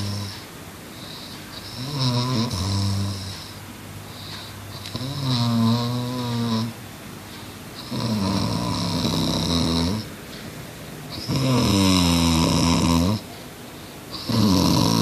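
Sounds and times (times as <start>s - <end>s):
boy snoring: 0.0s - 0.3s, 1.6s - 3.6s, 4.8s - 6.8s, 7.8s - 10.1s, 11.2s - 13.3s, 14.1s - 15.0s.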